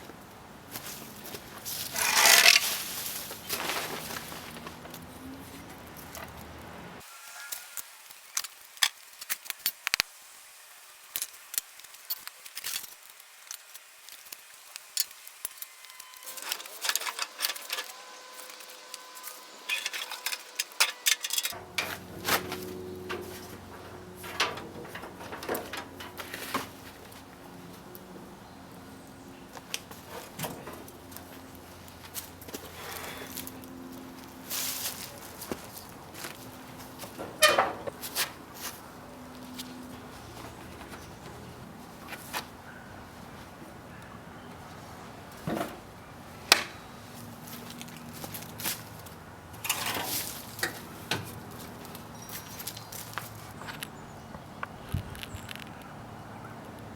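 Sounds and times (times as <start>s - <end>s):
metal tools clinking and knocking: 1.9s - 2.8s, 16.3s - 18.0s, 19.7s - 26.9s, 37.1s - 38.0s.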